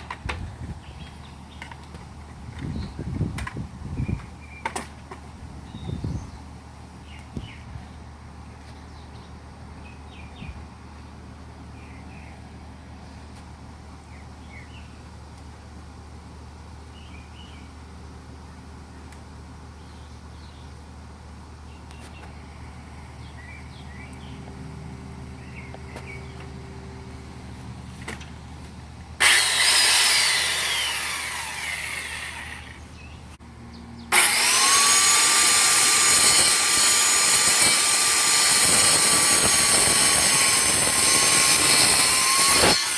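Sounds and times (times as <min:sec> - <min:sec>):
circular saw motor: 0:29.2 - 0:32.9, 0:34.1 - 0:42.9.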